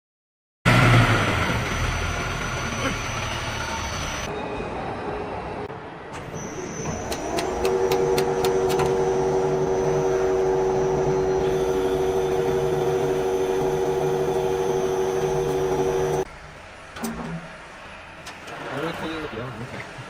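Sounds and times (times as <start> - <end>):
electric motor humming: 7.1 - 16.2.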